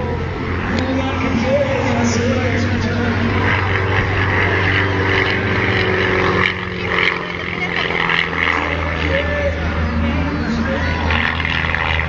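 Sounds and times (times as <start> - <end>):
propeller aircraft engine drone: 0.0 - 12.0.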